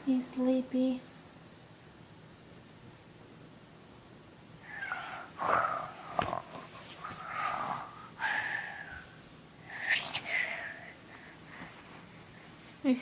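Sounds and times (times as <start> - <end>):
child making snoring noises: 4.6 - 6.6, 7.2 - 8.9.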